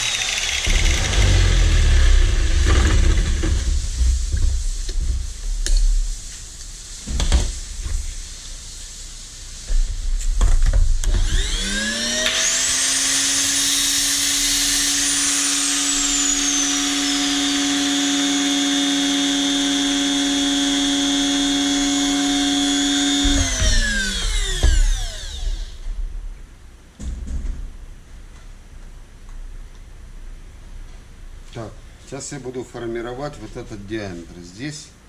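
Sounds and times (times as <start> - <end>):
power tool motor whining: 0.0 - 3.4, 11.0 - 25.8.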